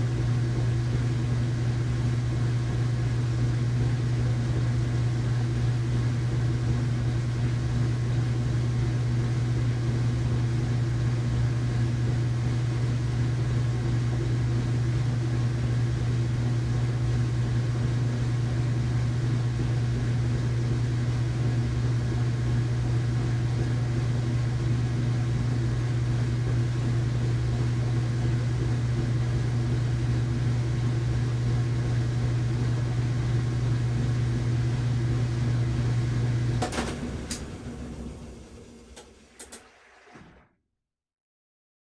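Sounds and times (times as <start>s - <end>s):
washing machine running: 0.0s - 40.5s.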